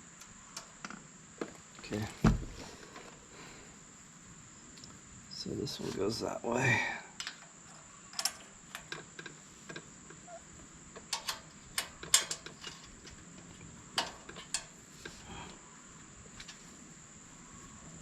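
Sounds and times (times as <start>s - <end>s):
small metal parts clicking and tapping: 7.2s - 10.3s, 10.9s - 13.3s, 14.0s - 15.2s.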